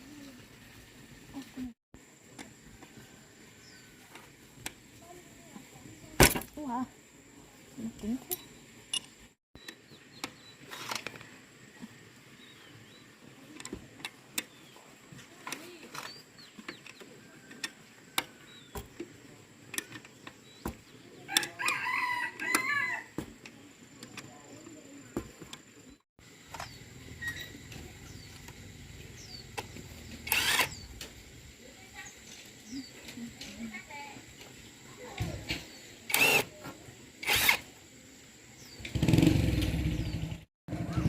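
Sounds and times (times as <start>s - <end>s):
rooster crowing: 21.3s - 23.2s.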